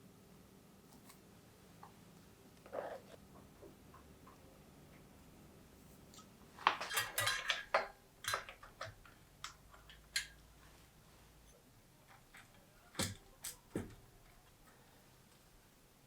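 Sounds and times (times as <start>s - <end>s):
metal bicycle parts clinking: 6.1s - 10.5s.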